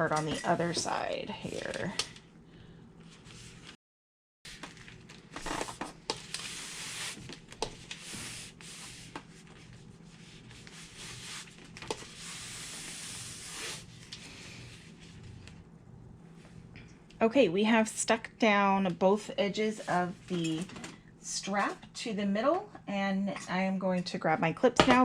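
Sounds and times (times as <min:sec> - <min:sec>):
tape rustling and crackling: 0:04.5 - 0:15.6.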